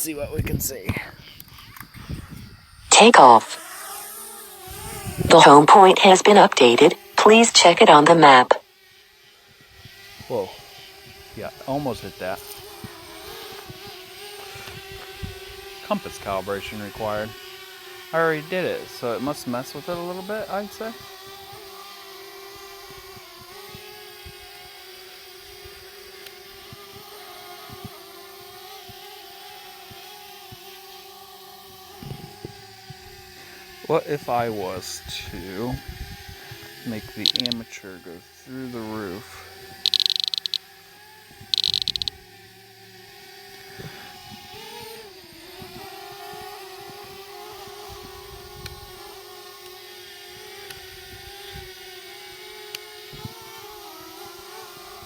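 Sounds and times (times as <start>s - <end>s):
rapid high-pitched beeps: 37.2s - 37.6s, 39.9s - 40.6s, 41.6s - 42.1s
drone propellers whirring: 38.8s - 40.7s, 41.4s - 44.6s
drone propellers whining: 39.0s - 40.7s, 41.6s - 42.2s.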